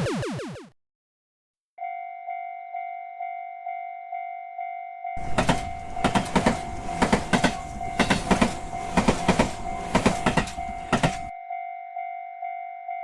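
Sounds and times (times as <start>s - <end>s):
electronic crossing warning bell: 1.8s - 13.0s
train wheels clattering over rail joints: 5.2s - 11.3s.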